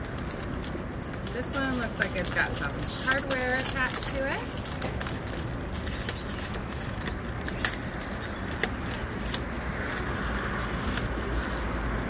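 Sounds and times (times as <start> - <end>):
packaging being handled: 0.0 - 12.0
steady background hum: 0.0 - 12.0.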